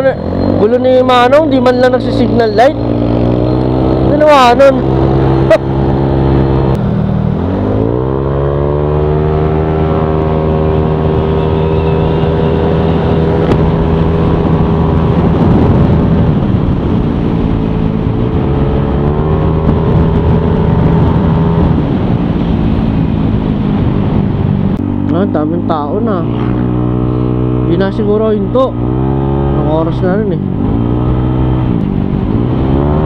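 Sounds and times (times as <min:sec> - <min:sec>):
scooter engine revving: 0:00.0 - 0:21.8, 0:24.8 - 0:33.0.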